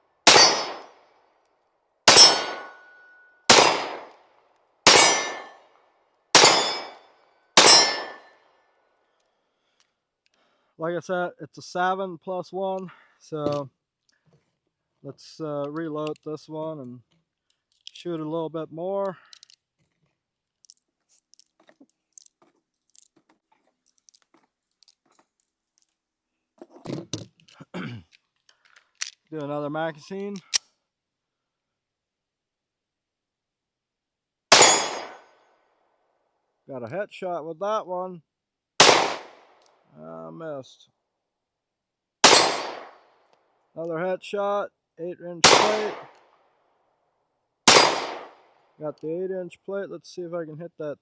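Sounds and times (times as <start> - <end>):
pistol shots: 0.2 - 1.0, 2.1 - 2.9, 3.5 - 4.2, 4.9 - 5.6, 6.4 - 7.0, 7.6 - 8.3, 34.5 - 35.2, 38.8 - 39.5, 42.2 - 43.0, 45.4 - 46.2, 47.7 - 48.4
cartridges clicking into magazine: 3.5 - 4.2, 45.5 - 46.2.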